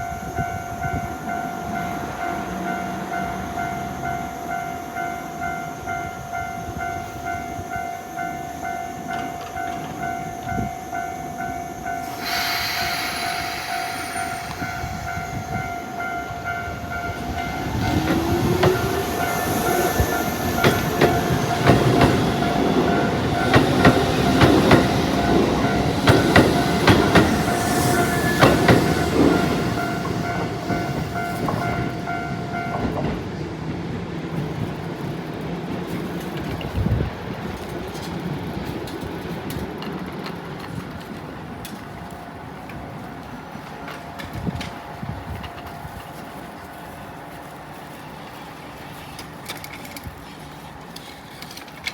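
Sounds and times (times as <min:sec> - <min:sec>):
level crossing warning bell: 0:00.0 - 0:33.4
train wheels clacking: 0:11.4 - 0:33.4.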